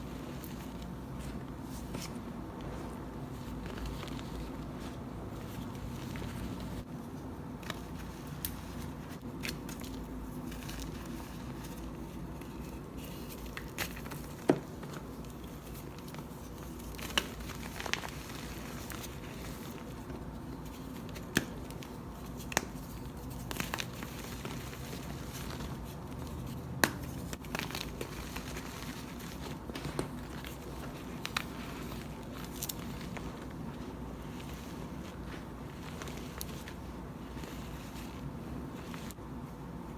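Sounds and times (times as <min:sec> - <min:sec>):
chalk crackling and snapping: 0:12.5 - 0:38.3.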